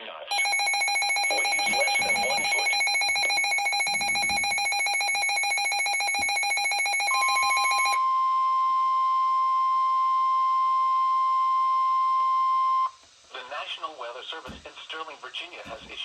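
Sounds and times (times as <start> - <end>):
pulsing electronic alert tones: 0.3 - 8.0
steady warning tone: 0.3 - 8.0.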